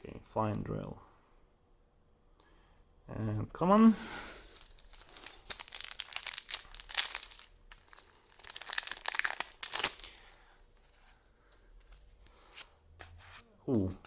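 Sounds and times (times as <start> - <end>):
foil wrapper crinkling and tearing: 4.5 - 10.5.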